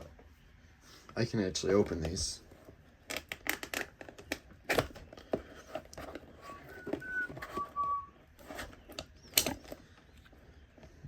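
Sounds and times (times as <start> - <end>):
high whistled notes: 6.5 - 8.1.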